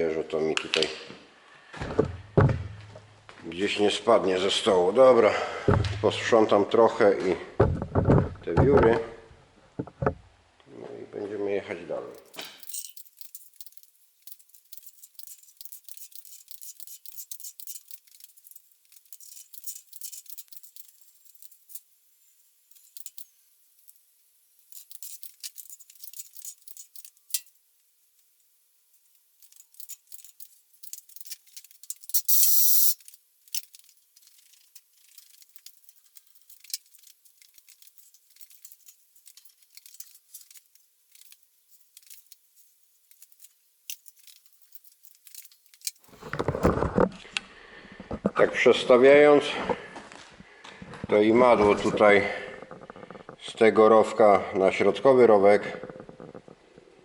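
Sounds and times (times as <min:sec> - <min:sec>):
metal chips being scraped: 0:12.2 - 0:22.0, 0:22.6 - 0:24.0, 0:24.6 - 0:27.5, 0:29.4 - 0:46.2
short loud hiss: 0:32.2 - 0:33.0.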